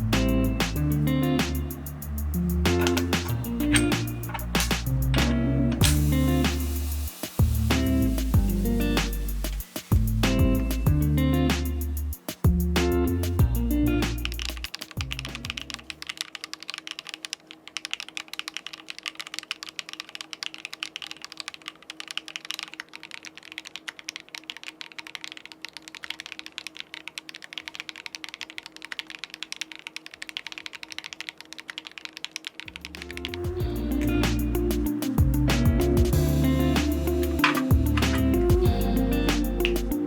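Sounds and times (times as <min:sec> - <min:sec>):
mechanical keyboard typing: 0:15.8 - 0:33.5.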